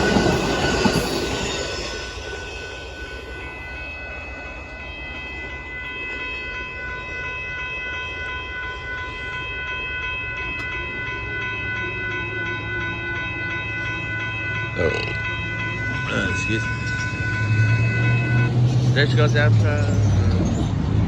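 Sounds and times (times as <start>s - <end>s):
train rumbling past: 0.0s - 21.0s
high-pitched tones: 10.5s - 20.3s.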